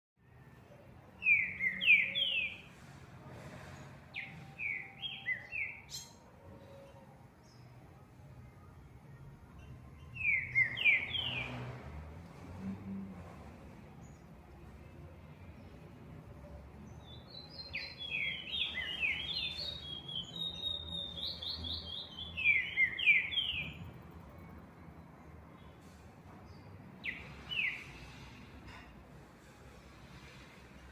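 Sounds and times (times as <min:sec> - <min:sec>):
bird whistling song: 0:01.2 - 0:02.7, 0:04.1 - 0:06.2, 0:10.1 - 0:11.5, 0:17.0 - 0:23.8, 0:27.0 - 0:27.9.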